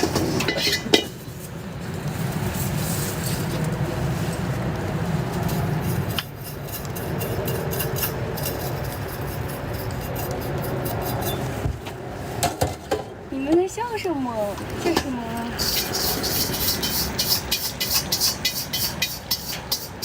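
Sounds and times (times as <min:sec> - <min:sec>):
metal spatula scraping wok: 0:00.0 - 0:01.4, 0:05.4 - 0:11.6, 0:14.6 - 0:20.0.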